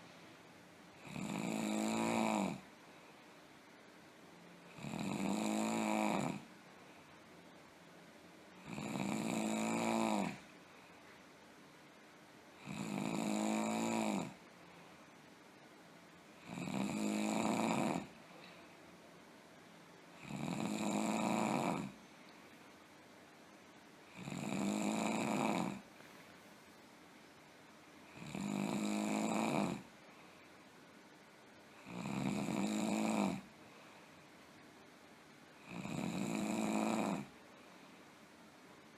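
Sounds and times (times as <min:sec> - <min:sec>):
person snoring heavily: 0:01.0 - 0:02.6, 0:04.7 - 0:06.5, 0:08.6 - 0:10.4, 0:12.6 - 0:14.4, 0:16.4 - 0:18.1, 0:20.2 - 0:22.0, 0:24.1 - 0:25.9, 0:28.1 - 0:29.9, 0:31.8 - 0:33.5, 0:35.6 - 0:37.3.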